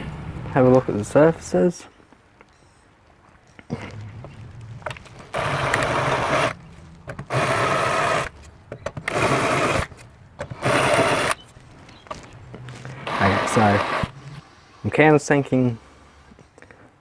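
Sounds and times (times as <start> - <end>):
power drill running in short bursts: 10.6 - 11.4.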